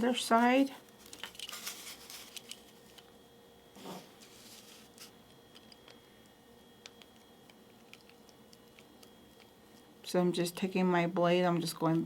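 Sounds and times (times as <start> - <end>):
soft rustle: 1.4 - 2.9, 3.8 - 5.2.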